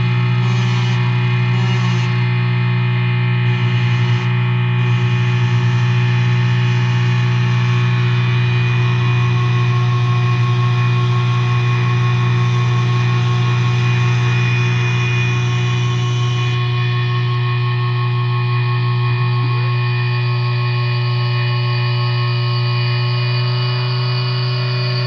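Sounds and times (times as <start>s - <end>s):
distorted drone: 0.0s - 25.0s.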